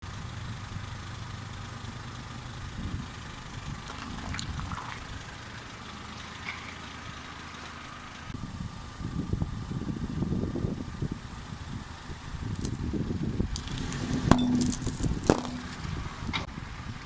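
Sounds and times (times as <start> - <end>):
car engine idling: 0.0 - 17.0
irregular low rumble: 2.9 - 7.6.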